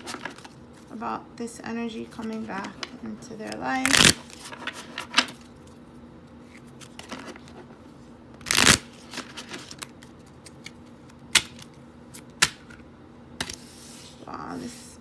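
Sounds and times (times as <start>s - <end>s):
cards snapping: 8.4s - 12.8s.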